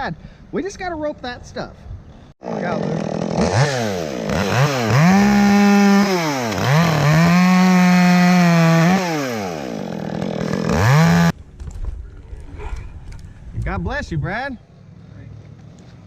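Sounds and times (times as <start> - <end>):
chainsaw revving: 2.4 - 11.3.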